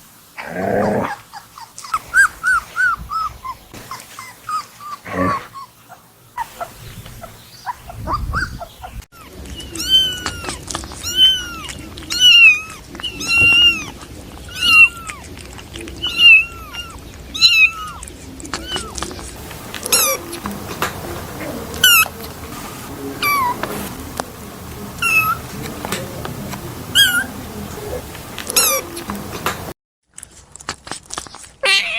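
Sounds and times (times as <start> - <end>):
kittens meowing: 0.9 - 9.0, 16.0 - 29.7.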